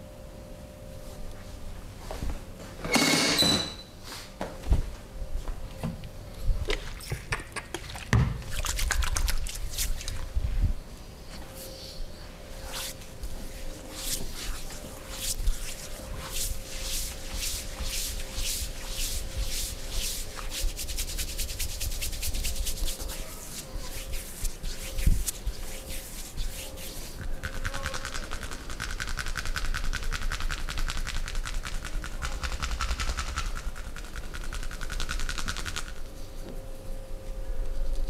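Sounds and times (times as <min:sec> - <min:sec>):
hands rubbing skin: 0:08.5 - 0:10.3, 0:12.6 - 0:36.0
tapping massage strokes: 0:12.6 - 0:36.0.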